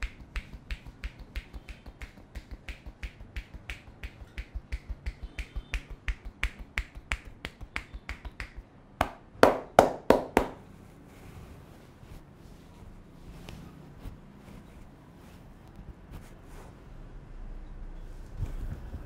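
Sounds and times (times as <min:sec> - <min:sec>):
hands slapping a head: 0:00.0 - 0:10.6.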